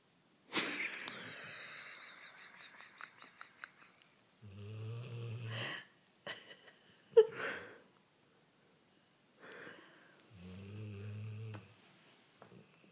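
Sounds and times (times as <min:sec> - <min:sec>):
intake of breath: 0:09.4 - 0:10.2.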